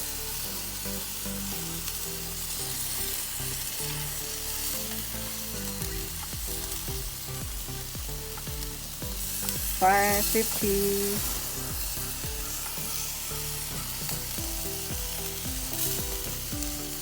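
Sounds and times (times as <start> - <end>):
faint background music: 0.0 - 17.0
steak sizzling on a grill: 0.0 - 17.0.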